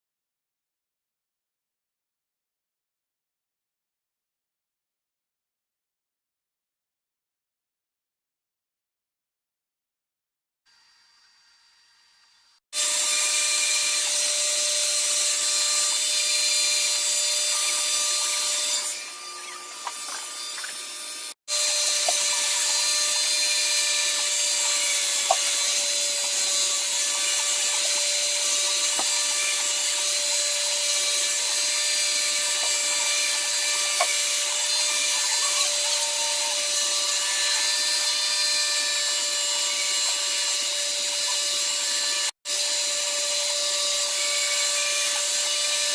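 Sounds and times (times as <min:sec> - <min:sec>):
power tool whining through wood: 0:10.7 - 0:45.9.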